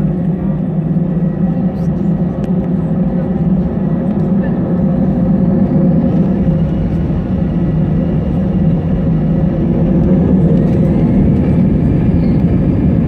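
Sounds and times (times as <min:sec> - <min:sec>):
airplane engines rumbling: 0:00.0 - 0:13.0.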